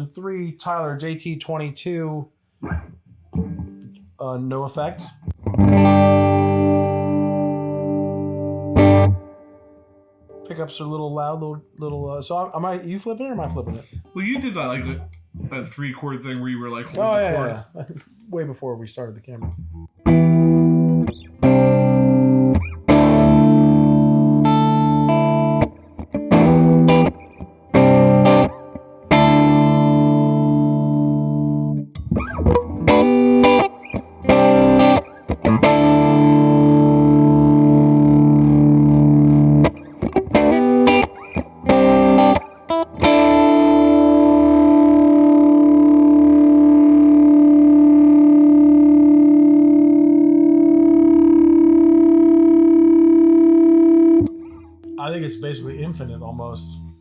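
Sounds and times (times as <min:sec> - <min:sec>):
electric guitar strumming chords: 0:04.8 - 0:11.1, 0:19.5 - 0:57.0.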